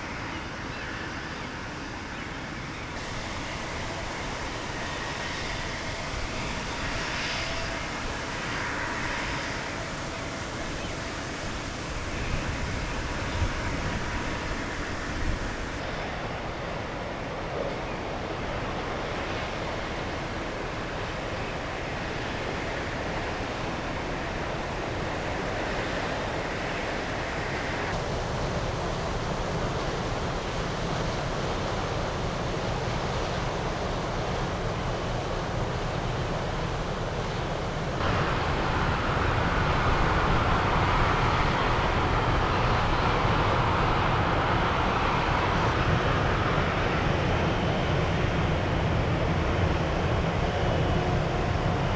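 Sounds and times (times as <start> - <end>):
ship engine rumble: 3.0 - 45.6
wind on microphone: 30.2 - 45.9.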